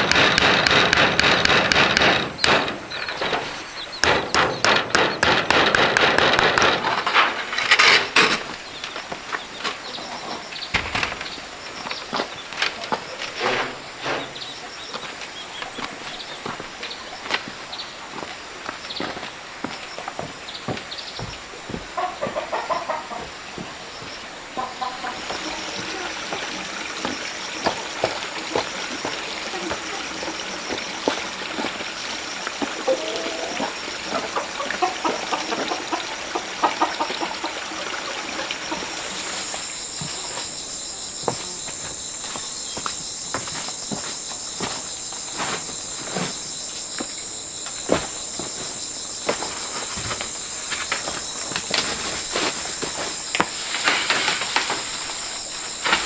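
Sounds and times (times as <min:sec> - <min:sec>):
sharp clicks and knocks: 0:00.0 - 0:08.5
chickens clucking: 0:00.0 - 0:08.6, 0:21.2 - 0:40.5
insect drone: 0:00.0 - 0:15.5, 0:23.8 - 0:56.0.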